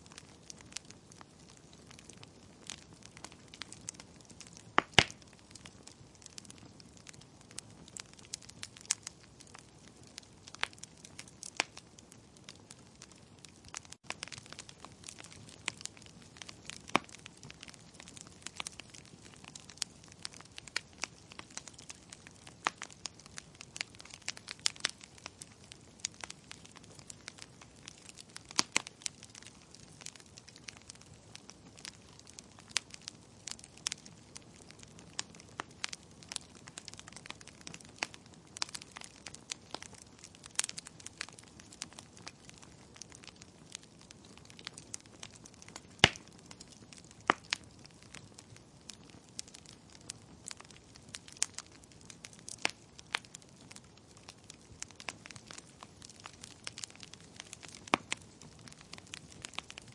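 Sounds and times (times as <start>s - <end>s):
soft steady hiss: 0.0s - 59.9s
wood fire crackling and popping: 0.0s - 59.9s.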